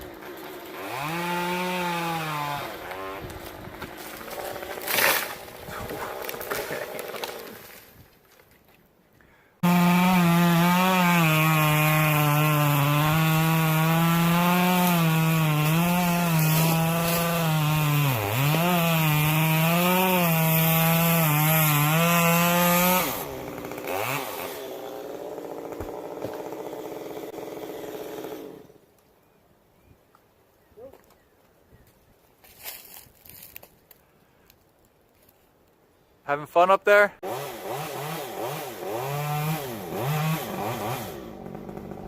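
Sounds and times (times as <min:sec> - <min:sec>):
chainsaw cutting wood: 0:00.0 - 0:08.0, 0:09.6 - 0:28.8, 0:37.2 - 0:42.0.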